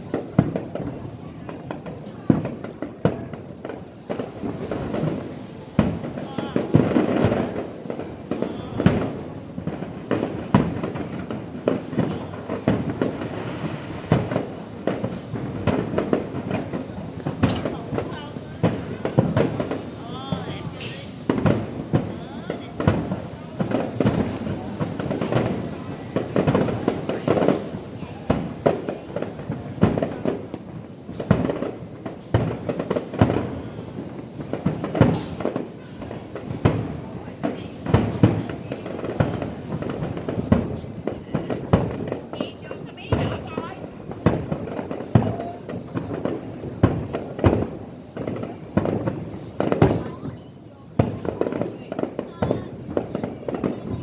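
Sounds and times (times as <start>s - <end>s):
distant fireworks bangs and booms: 0.0s - 54.0s.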